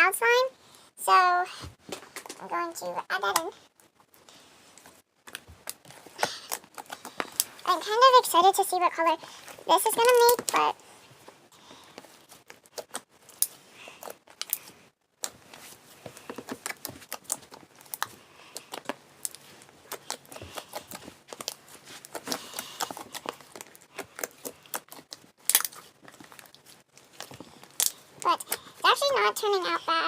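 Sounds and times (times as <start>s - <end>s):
slime squishing by hand: 3.2s - 8.4s, 11.6s - 29.8s.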